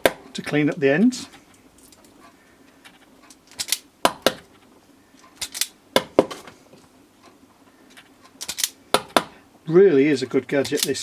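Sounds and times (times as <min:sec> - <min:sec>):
wire stripper clicks: 0:02.8 - 0:06.2, 0:07.2 - 0:09.4, 0:10.6 - 0:11.0.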